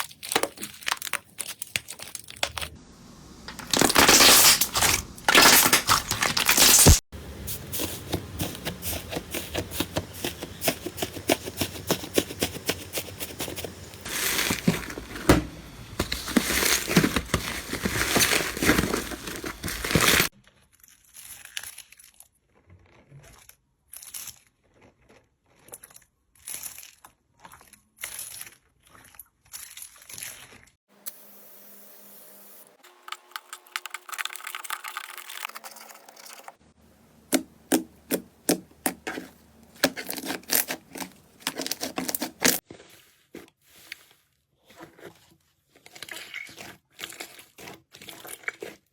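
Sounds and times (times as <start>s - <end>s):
slime crackling and squishing: 0.0s - 20.3s, 37.3s - 48.9s.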